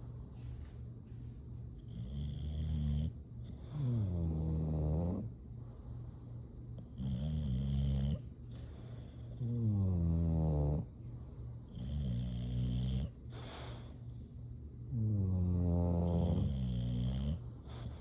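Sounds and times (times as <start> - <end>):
quiet breathing: 0.0 - 2.0, 5.2 - 7.0, 8.2 - 10.0, 10.8 - 15.2, 16.2 - 18.0
dog snoring: 1.8 - 5.3, 6.8 - 11.0, 11.6 - 13.9, 14.9 - 18.0.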